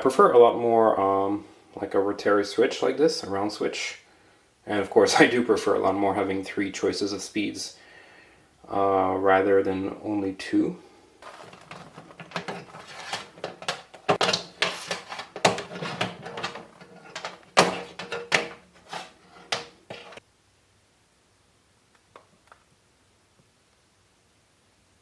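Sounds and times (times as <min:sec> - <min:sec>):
fan being handled clicks and knocks: 0:11.2 - 0:20.2.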